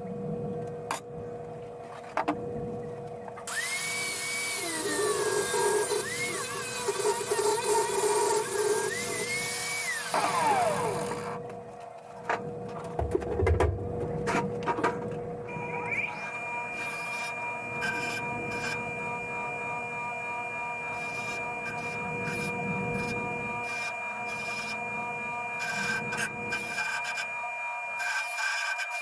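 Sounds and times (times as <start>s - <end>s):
power tool motor whine: 3.5s - 11.4s, 15.5s - 29.0s.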